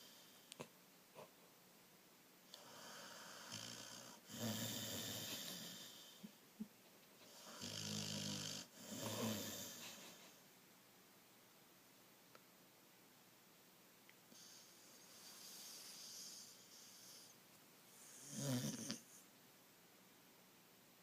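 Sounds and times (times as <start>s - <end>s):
person snoring: 2.6s - 6.2s, 7.4s - 9.8s, 18.0s - 19.1s.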